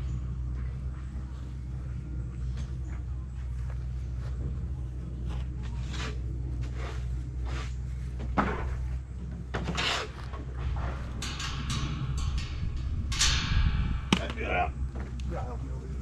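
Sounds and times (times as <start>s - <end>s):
steady low hum: 0.0s - 16.0s
knocks clatters and scrapes: 5.4s - 15.3s.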